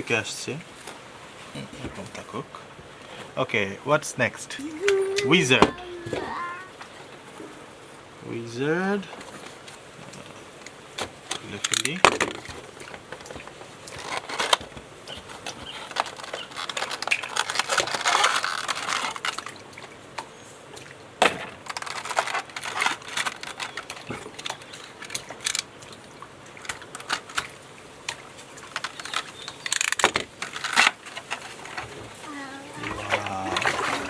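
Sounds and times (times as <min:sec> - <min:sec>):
packaging crackling and rustling: 0:09.2 - 0:20.0, 0:21.3 - 0:25.8, 0:26.6 - 0:32.3.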